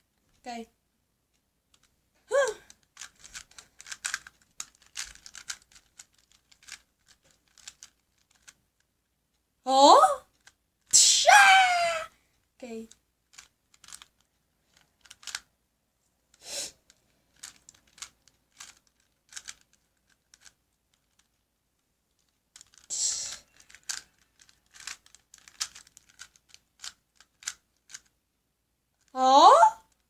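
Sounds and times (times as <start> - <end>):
puzzle cube clicking: 1.7 - 8.9, 10.3 - 10.9, 12.9 - 15.5, 16.3 - 21.4, 22.2 - 28.2
puzzle cube rattling turns: 1.7 - 9.2, 10.3 - 10.9, 12.8 - 15.5, 16.8 - 28.2.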